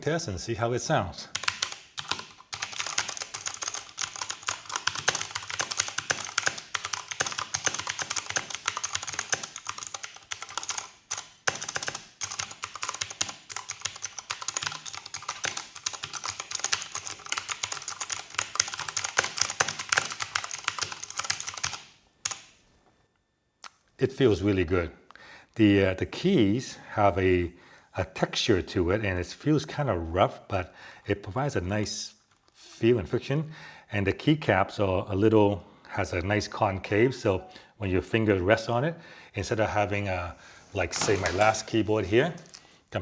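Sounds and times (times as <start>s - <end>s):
fast typing on clicky keyboard: 1.3s - 22.5s, 41.0s - 41.7s.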